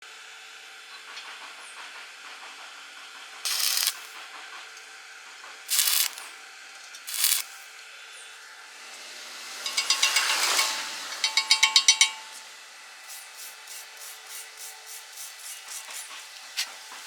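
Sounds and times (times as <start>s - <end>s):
welding arc crackling: 3.5s - 4.2s, 5.7s - 6.3s, 7.0s - 7.7s.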